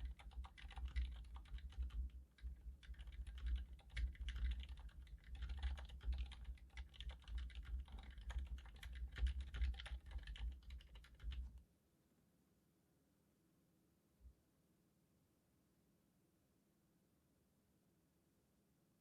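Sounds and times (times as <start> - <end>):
fast typing on keyboard: 0.0 - 11.6.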